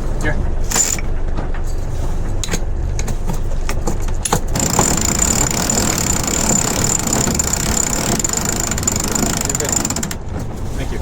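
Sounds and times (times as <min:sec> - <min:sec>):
boat engine running: 0:00.0 - 0:11.0
winch clicks: 0:04.5 - 0:10.3.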